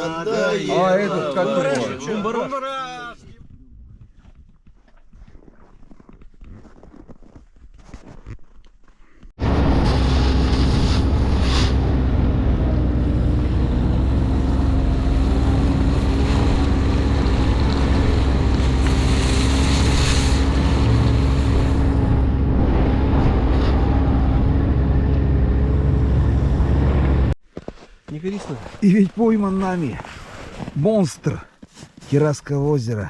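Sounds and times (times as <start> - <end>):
engine running steadily: 9.4 - 27.4.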